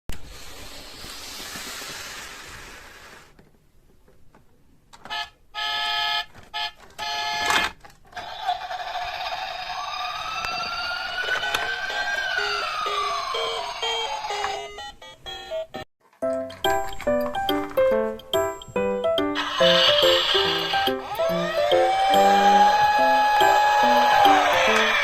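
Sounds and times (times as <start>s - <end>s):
hiss: 0.2s - 3.4s
emergency vehicle siren wailing: 10.4s - 14.7s, 19.4s - 25.0s.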